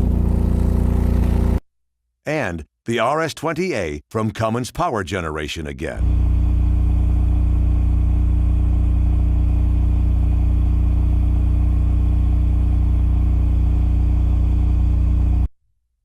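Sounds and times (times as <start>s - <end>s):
generator engine hum: 0.0s - 1.6s, 6.0s - 15.5s.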